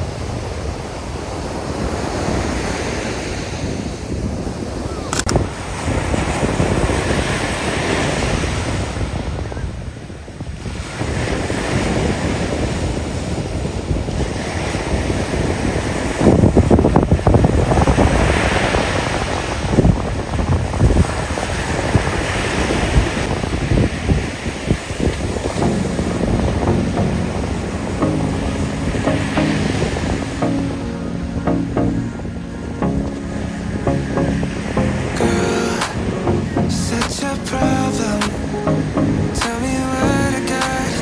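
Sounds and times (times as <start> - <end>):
wind gusting on microphone: 0.0 - 30.4
ocean surf breaking: 24.8 - 41.0.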